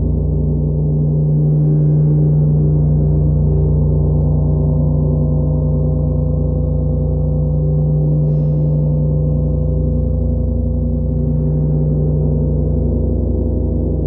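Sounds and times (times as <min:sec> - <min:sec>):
gong droning under friction mallet: 0:00.0 - 0:14.0.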